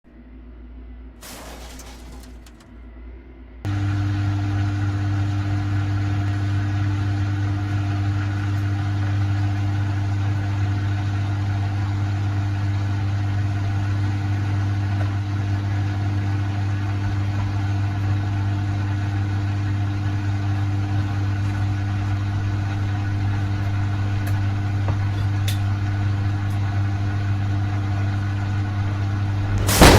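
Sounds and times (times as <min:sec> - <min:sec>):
washing machine humming: 0:25.7 - 0:29.9.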